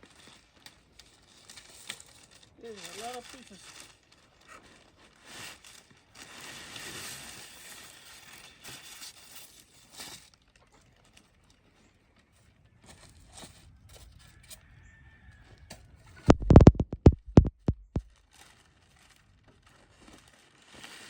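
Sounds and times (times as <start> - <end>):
packaging crinkling: 16.3 - 21.0.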